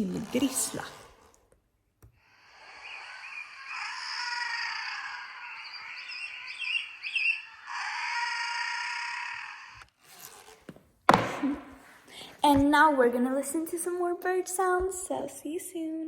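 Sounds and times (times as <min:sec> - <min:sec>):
seabird calls through small speaker: 0:02.4 - 0:09.7.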